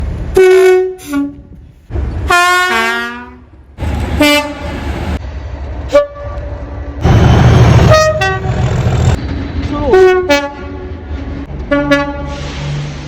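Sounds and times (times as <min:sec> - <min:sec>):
train noise: 0:00.0 - 0:13.0
two-tone locomotive horn blasts: 0:00.3 - 0:01.5, 0:02.3 - 0:04.8, 0:07.5 - 0:09.2, 0:09.9 - 0:10.9, 0:11.7 - 0:12.4.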